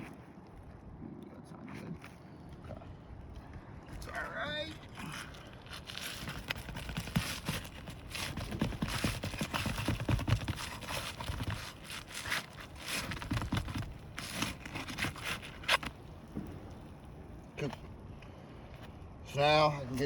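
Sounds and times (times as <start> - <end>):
roof shingles scraping and crackling: 5.7 - 16.9.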